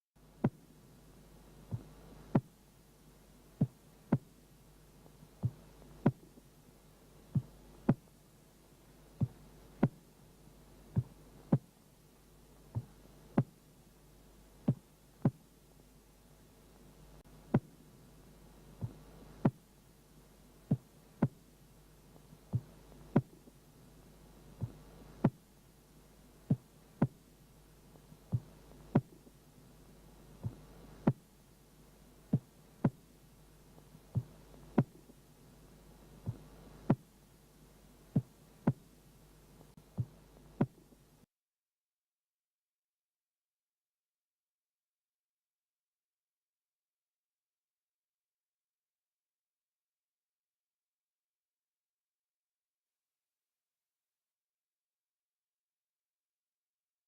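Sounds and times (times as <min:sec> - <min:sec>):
heartbeat lub-dub: 0:00.2 - 0:08.2, 0:08.8 - 0:11.8, 0:12.5 - 0:13.6, 0:17.2 - 0:17.9, 0:18.5 - 0:25.5, 0:26.3 - 0:31.3, 0:32.0 - 0:35.2, 0:35.8 - 0:37.2, 0:37.8 - 0:38.9, 0:39.7 - 0:40.9
faint steady hum: 0:00.2 - 0:41.3.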